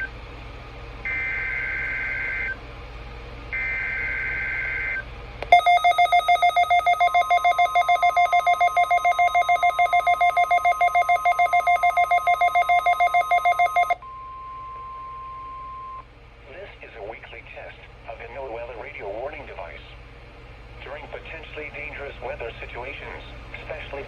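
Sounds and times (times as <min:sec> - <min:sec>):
steady warning alarm tone: 0:01.0 - 0:02.6, 0:03.5 - 0:16.0
rapid radio alert beeping: 0:03.6 - 0:14.8.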